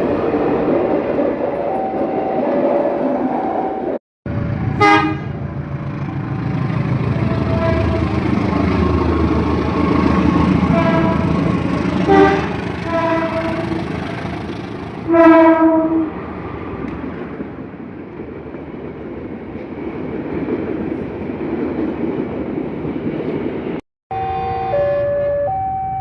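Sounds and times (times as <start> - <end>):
train rumbling: 0.0 - 26.0
train horn blasts: 4.8 - 5.3, 7.4 - 8.2, 10.7 - 14.0, 15.1 - 16.2.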